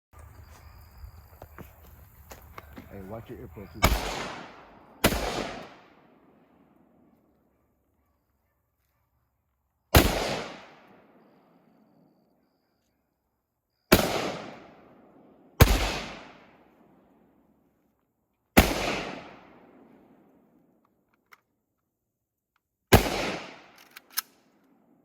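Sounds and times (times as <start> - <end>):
rifle shots echoing: 2.5 - 6.7, 9.9 - 11.1, 13.9 - 14.9, 15.6 - 16.6, 18.6 - 20.0, 22.9 - 24.0.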